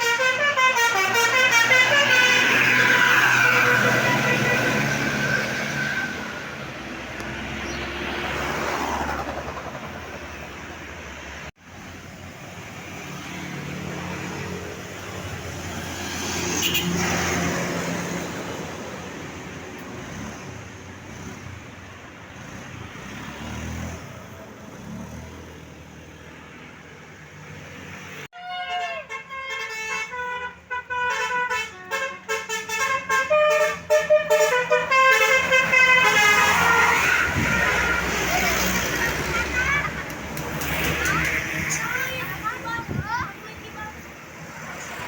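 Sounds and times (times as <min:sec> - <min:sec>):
multi-tone bus horn: 0:00.0 - 0:06.5, 0:16.5 - 0:17.3, 0:28.3 - 0:39.2
buses driving past: 0:00.0 - 0:45.0.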